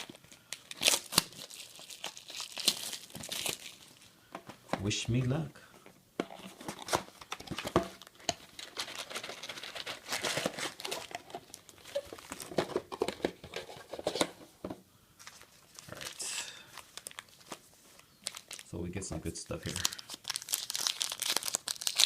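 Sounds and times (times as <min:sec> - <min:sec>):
card pack wrapper tearing: 0:00.0 - 0:04.0, 0:06.4 - 0:12.5, 0:15.3 - 0:17.6, 0:18.2 - 0:18.7, 0:19.7 - 0:22.0.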